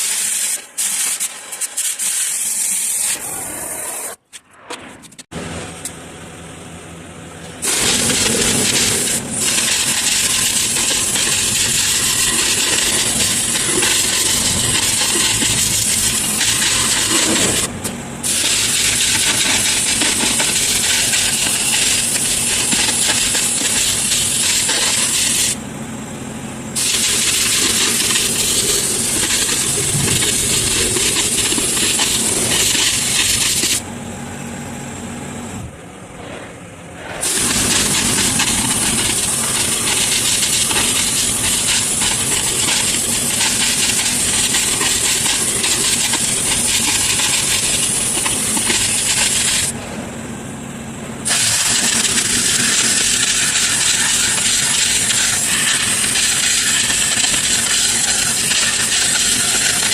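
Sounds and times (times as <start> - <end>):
loud metalwork hiss: 0.0 - 4.2, 7.6 - 25.6, 26.8 - 33.8, 36.9 - 49.8, 51.2 - 59.9.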